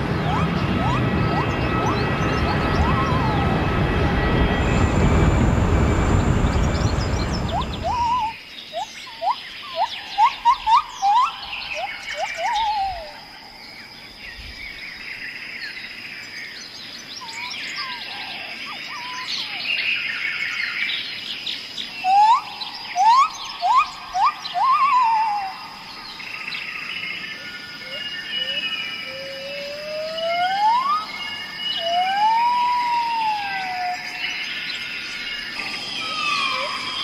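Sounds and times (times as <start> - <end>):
loud rushing noise: 0.0 - 8.3
bird whistling rising notes: 0.0 - 13.5, 21.9 - 37.0
birds chirping: 0.0 - 37.0
thin high steady tone: 35.4 - 37.0.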